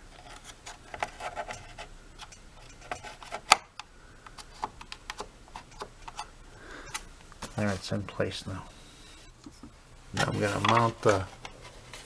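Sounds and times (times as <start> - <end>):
plastic clicks and knocks: 2.2 - 6.3.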